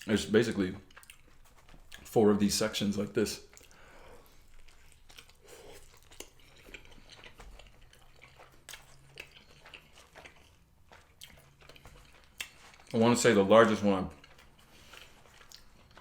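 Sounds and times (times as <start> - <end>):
close-up chewing: 0.0 - 2.2, 3.0 - 16.0
wet mouth clicks and smacks: 3.5 - 3.8.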